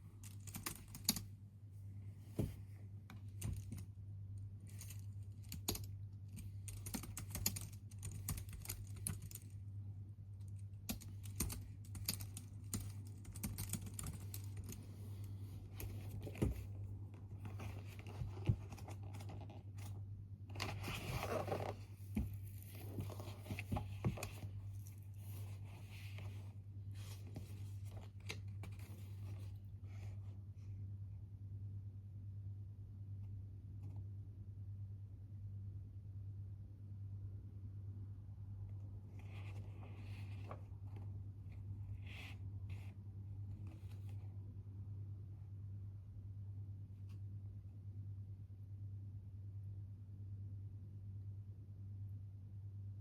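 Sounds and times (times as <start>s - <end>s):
typing on computer keyboard: 0.2s - 1.3s, 5.4s - 9.5s, 10.9s - 14.8s.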